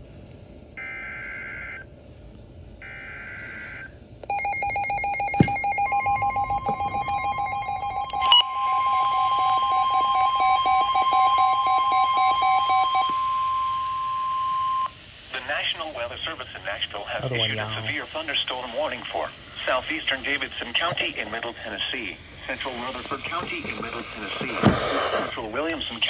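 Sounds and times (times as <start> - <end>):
steady warning tone: 2.8 - 15.0
rapid pulsing beep: 4.3 - 14.9.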